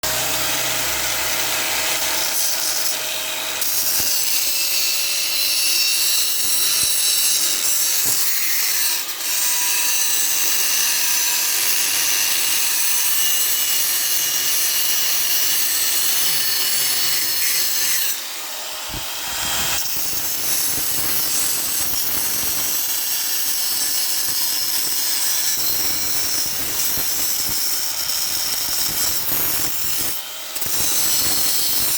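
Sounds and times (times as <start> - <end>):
welding arc crackling hiss: 18.8 - 31.9.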